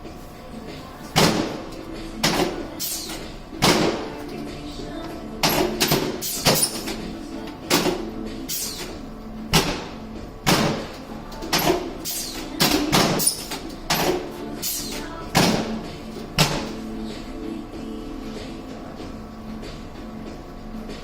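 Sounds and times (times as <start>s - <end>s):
quiet background music: 0.0s - 21.0s.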